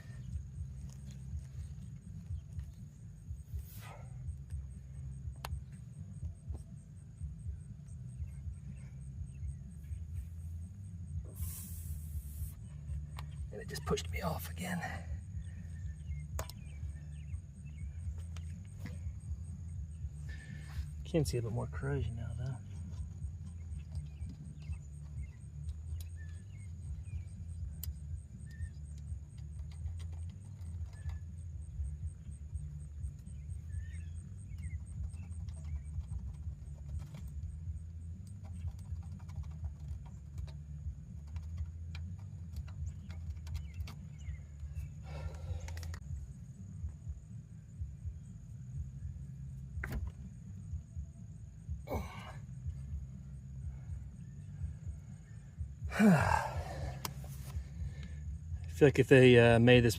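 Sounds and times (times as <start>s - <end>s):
low rumble: 0.0s - 38.9s, 39.5s - 59.9s
high insect chirping: 0.0s - 59.9s
sharp clicks: 16.3s - 16.7s, 45.6s - 46.1s.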